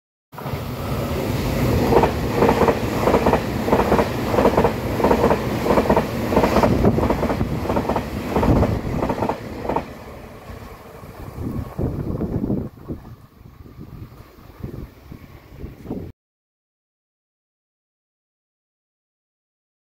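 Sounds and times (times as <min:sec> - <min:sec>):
train rumble: 0:00.4 - 0:16.1
train wheels clacking over rail joints: 0:01.8 - 0:09.9.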